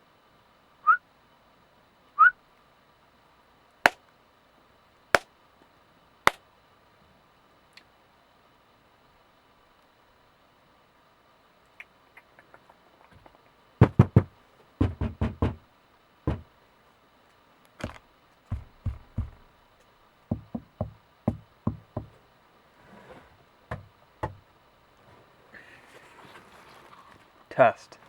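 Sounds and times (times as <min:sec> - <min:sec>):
faint microphone hiss: 0:00.0 - 0:28.0
sharp dry knocks: 0:13.8 - 0:15.6, 0:18.5 - 0:19.4.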